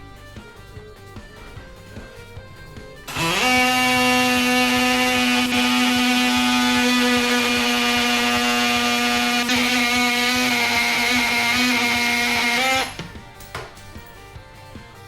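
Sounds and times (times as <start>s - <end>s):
oscillating multi-tool cutting screw: 3.1s - 13.1s.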